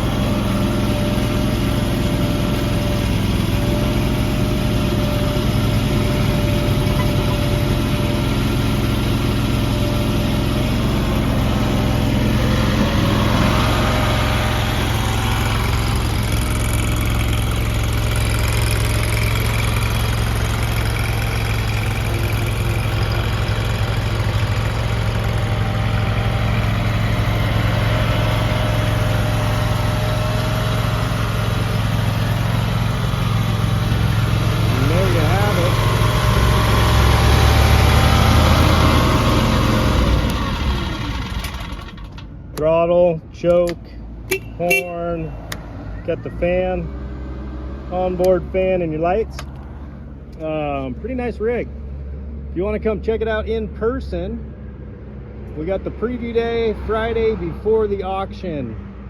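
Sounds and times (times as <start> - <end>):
small engine idling: 0.0 - 42.6.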